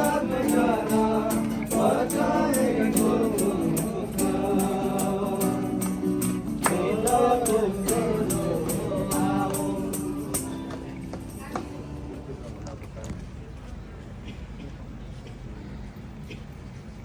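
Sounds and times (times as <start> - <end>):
sharp percussive strikes: 0.0 - 10.6
group singing a hymn: 0.0 - 11.2.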